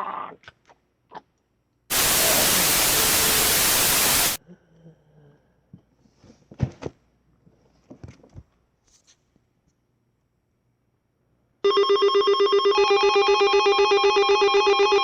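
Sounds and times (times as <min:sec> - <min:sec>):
hissing static: 0:01.9 - 0:04.4.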